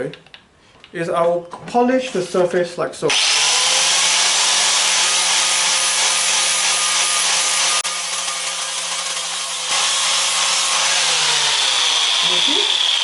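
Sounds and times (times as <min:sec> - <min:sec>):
electric grinder grinding metal: 0:03.1 - 0:13.0.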